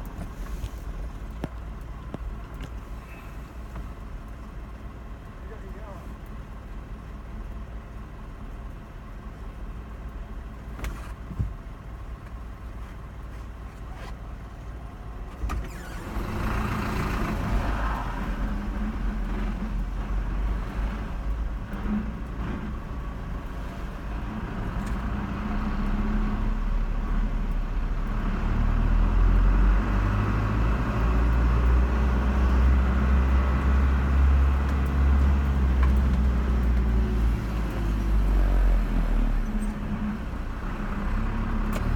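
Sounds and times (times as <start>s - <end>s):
car engine and road noise: 0.0s - 41.9s.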